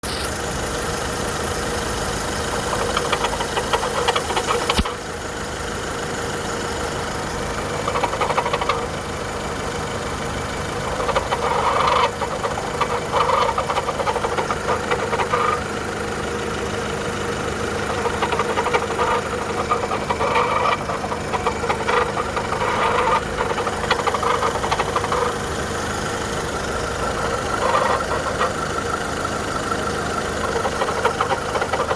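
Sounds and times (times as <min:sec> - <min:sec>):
car engine idling: 0:00.0 - 0:31.9
engine rattling: 0:00.0 - 0:31.9
sharp click: 0:02.9 - 0:05.0.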